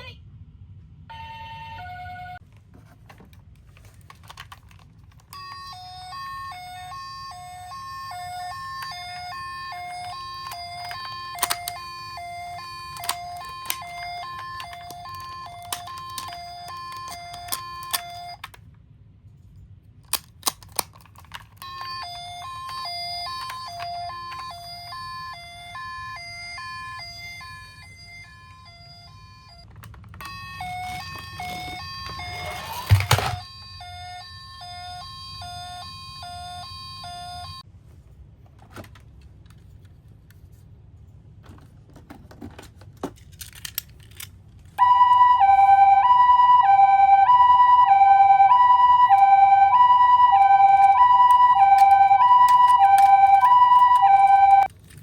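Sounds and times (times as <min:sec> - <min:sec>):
toy ambulance two-tone siren: 0:01.1 - 0:02.4, 0:05.2 - 0:18.6, 0:21.6 - 0:37.7, 0:44.8 - 0:54.7.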